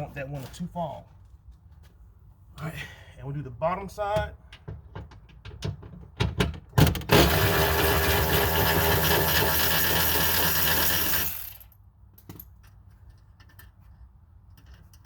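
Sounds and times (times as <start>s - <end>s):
cordless power tool running: 7.1s - 11.6s.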